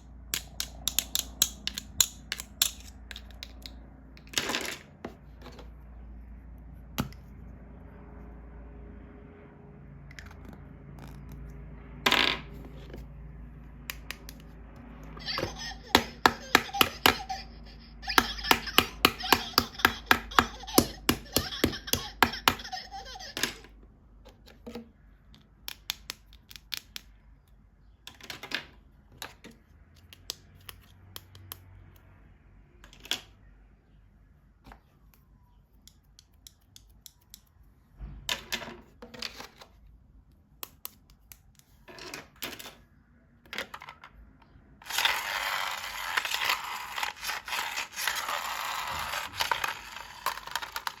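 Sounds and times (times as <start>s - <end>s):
sharp plastic clicks: 0.0s - 4.3s, 24.3s - 28.2s, 35.8s - 37.6s
plastic toys tapping: 0.0s - 5.7s, 13.9s - 27.5s, 35.2s - 37.6s, 46.0s - 51.0s.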